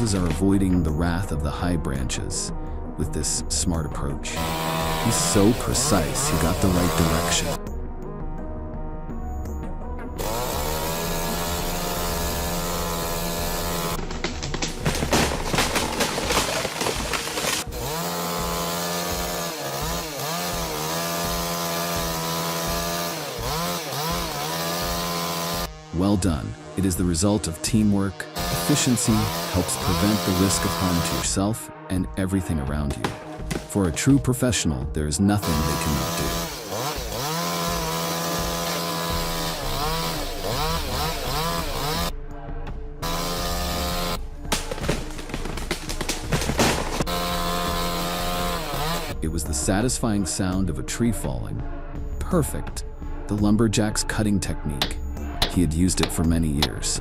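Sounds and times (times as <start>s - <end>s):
chainsaw engine at high revs: 0.0s - 0.4s, 4.3s - 7.6s, 10.2s - 31.4s, 33.0s - 34.0s, 35.4s - 42.1s, 43.0s - 49.2s.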